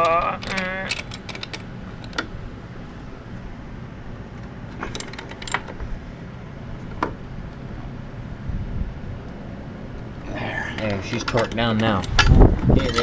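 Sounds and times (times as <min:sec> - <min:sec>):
hand tools clicking on metal: 0:00.0 - 0:02.3, 0:10.8 - 0:13.0.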